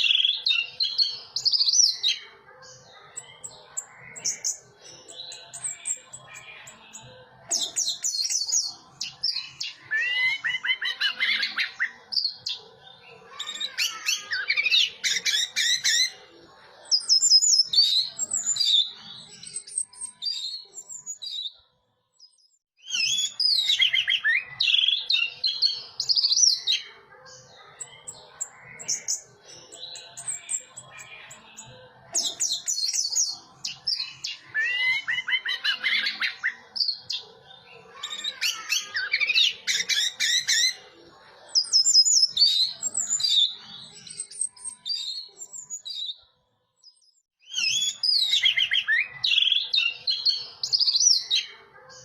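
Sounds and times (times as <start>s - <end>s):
thrush singing whistled phrases: 22.8s - 26.6s, 47.4s - 51.3s.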